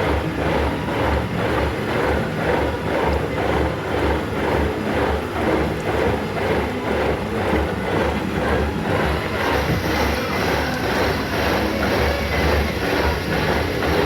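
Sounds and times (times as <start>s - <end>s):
lathe cutting metal: 8.9s - 14.0s.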